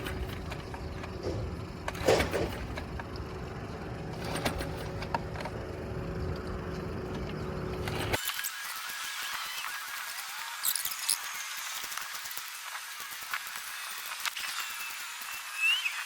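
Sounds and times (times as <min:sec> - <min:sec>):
outboard motor running: 0:00.0 - 0:08.2
knocks: 0:01.2 - 0:02.9.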